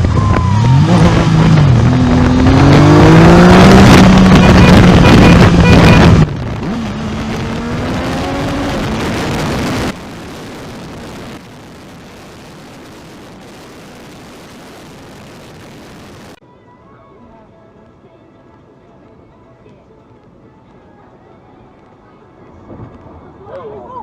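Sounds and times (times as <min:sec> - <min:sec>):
car engine revving: 0:00.0 - 0:16.4
road and wind noise: 0:00.0 - 0:24.0.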